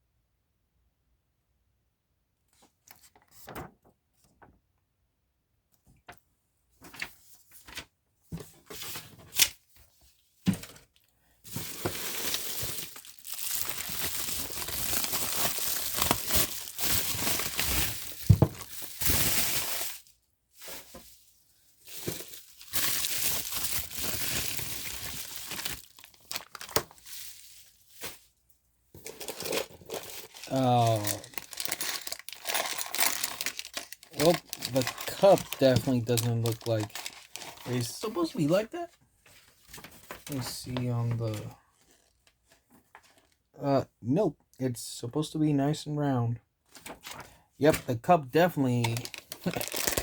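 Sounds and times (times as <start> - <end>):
packing material tearing and crinkling: 11.5 - 20.0, 21.9 - 28.2, 29.0 - 38.5, 48.8 - 50.0.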